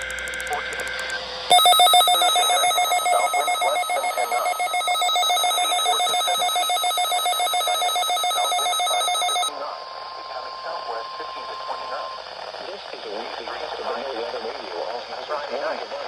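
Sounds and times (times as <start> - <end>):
rapidly pulsing alert beep: 1.5 - 9.5.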